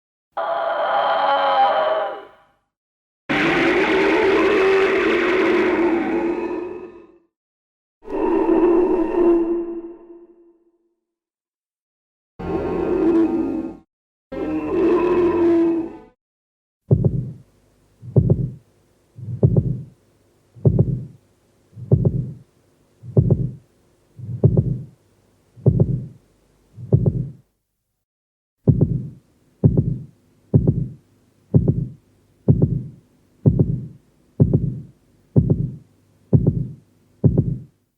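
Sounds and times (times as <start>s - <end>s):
heartbeat thuds: 16.9s - 17.4s, 18.0s - 18.6s, 19.2s - 20.0s, 20.6s - 21.2s, 21.8s - 23.6s, 24.2s - 25.0s, 25.6s - 26.2s, 26.8s - 27.4s, 28.7s - 37.8s.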